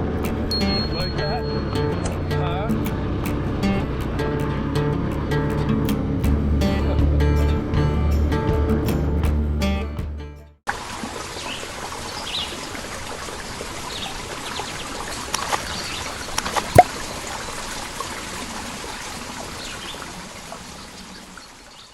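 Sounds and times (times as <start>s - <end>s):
water trickling: 10.7s - 21.9s.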